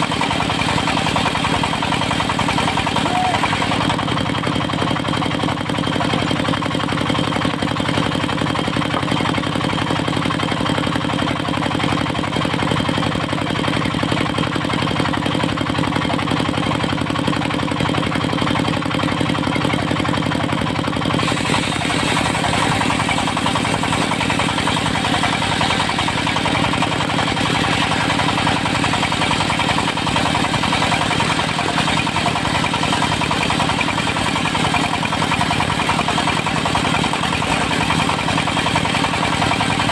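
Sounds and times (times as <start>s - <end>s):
sawmill engine running: 0.0s - 39.9s
harsh high-pitched saw noise: 21.2s - 28.6s.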